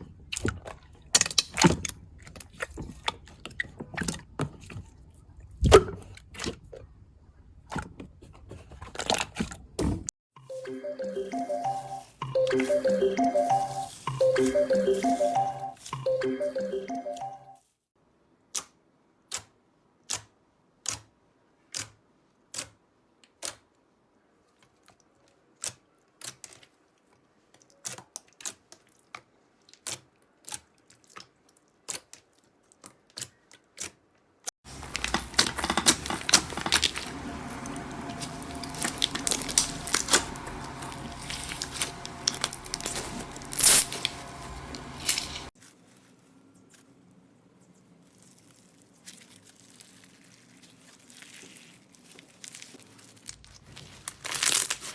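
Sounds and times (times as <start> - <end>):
slime crackling and popping: 34.8 - 44.1, 48.2 - 54.9.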